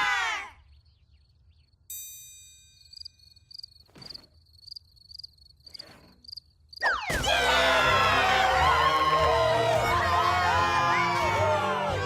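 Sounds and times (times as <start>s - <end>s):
crickets chirping: 0.6s - 6.8s
bell-like ding: 1.9s - 2.9s.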